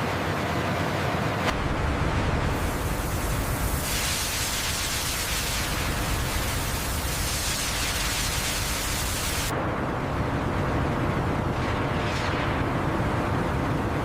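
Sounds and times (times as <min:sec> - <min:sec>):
dense rushing hiss: 0:01.5 - 0:09.5.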